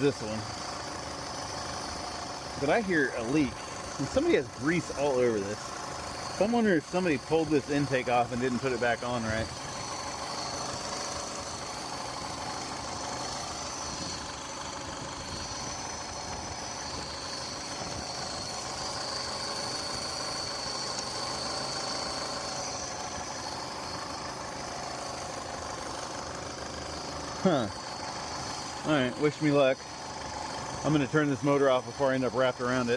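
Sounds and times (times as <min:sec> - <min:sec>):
outboard motor idling roughly: 0:00.0 - 0:32.9.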